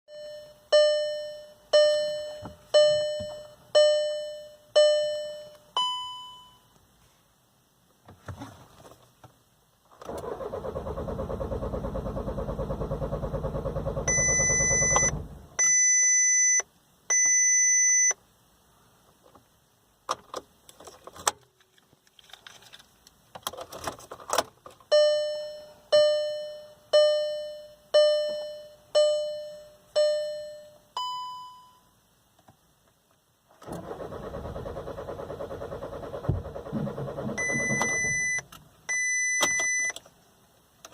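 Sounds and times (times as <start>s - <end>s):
dashboard warning chime: 0.1s - 6.8s, 14.0s - 18.2s, 24.9s - 32.0s, 37.3s - 40.0s
diesel engine cranking on starter: 10.0s - 15.5s, 33.6s - 38.2s
long high beeps: 14.0s - 18.2s, 37.4s - 39.9s.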